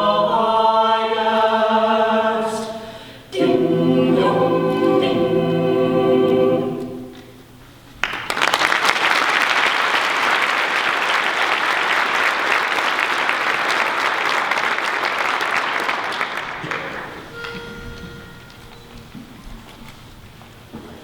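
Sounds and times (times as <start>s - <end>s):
audience applauding: 8.0s - 17.7s.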